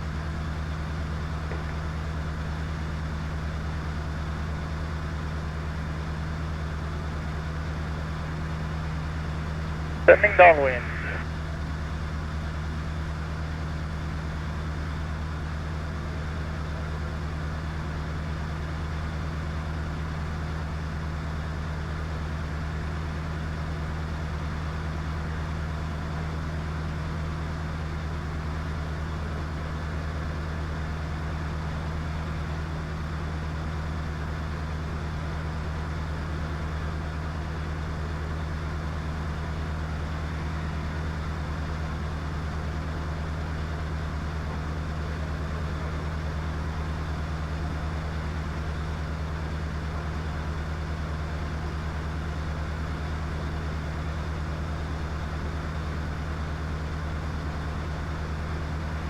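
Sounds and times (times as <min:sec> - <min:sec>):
light aircraft engine droning: 0:00.0 - 0:21.7.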